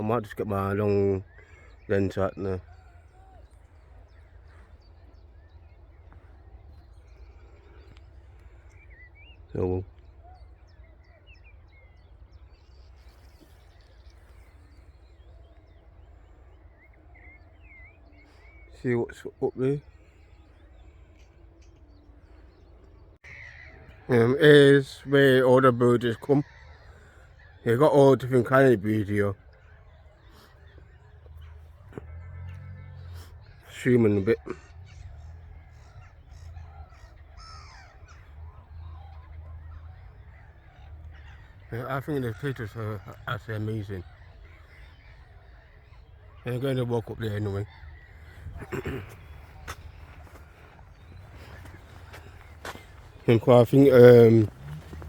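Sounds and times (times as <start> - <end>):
small birds chirping: 0.0 - 55.0.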